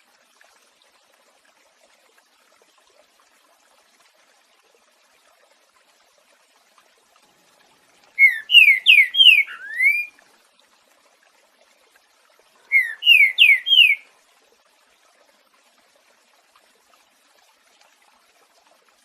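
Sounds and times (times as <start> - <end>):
bird whistling song: 8.2 - 10.1, 12.7 - 14.0.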